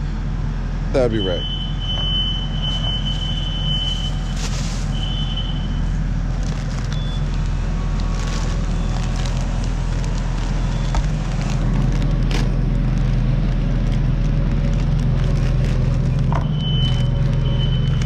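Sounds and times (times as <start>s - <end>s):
low machine hum: 0.0s - 18.0s
handling clicks and rustles: 6.3s - 18.0s.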